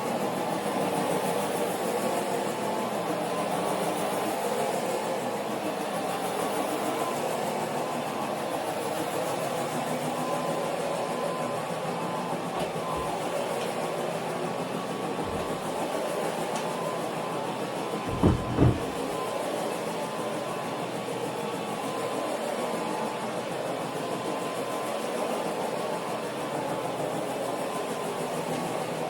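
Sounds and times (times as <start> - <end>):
carpet cleaning machine running: 10.8 - 20.8
low thumps: 18.1 - 19.2.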